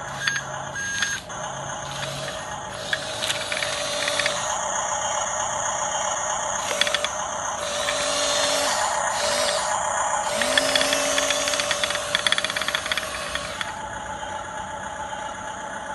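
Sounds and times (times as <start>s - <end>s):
mechanical ratcheting rattle: 0.0s - 13.8s
electric motor and gear whine: 0.0s - 15.9s
small clicks: 0.1s - 1.3s, 2.0s - 4.5s, 6.6s - 8.4s, 9.2s - 13.8s.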